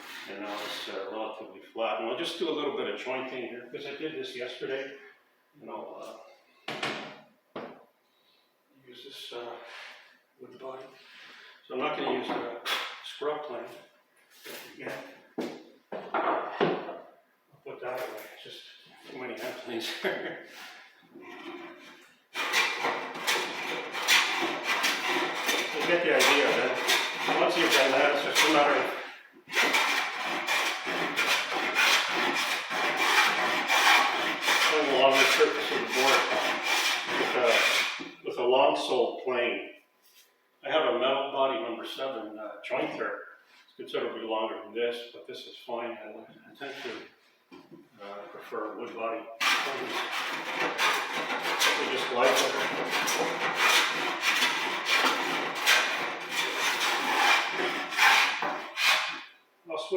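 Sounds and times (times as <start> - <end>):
hand plane shaving wood: 22.4 - 29.0, 29.6 - 38.0, 49.4 - 59.2.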